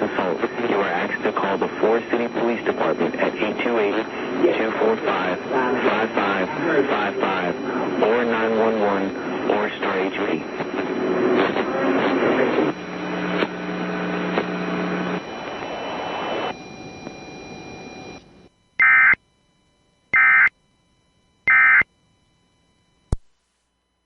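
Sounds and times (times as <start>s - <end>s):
screeching digital data tones: 18.8s - 19.2s, 20.1s - 20.5s, 21.5s - 21.8s.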